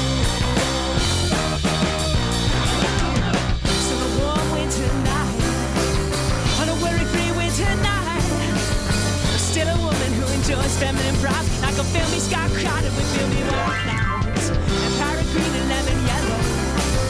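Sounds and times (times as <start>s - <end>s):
rock band playing: 0.0s - 17.0s.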